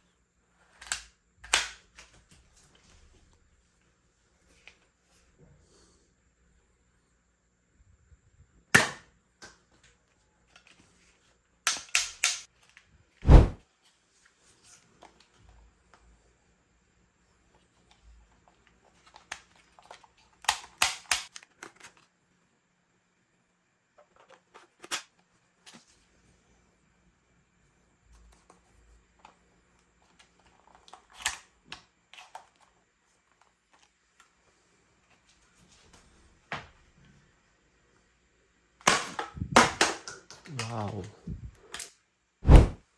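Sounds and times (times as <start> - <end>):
toy pistol snapping: 8.8 - 9.1, 11.7 - 12.5, 20.5 - 21.3, 38.9 - 40.8
toy pistol clicks: 11.7 - 12.5, 20.5 - 21.3.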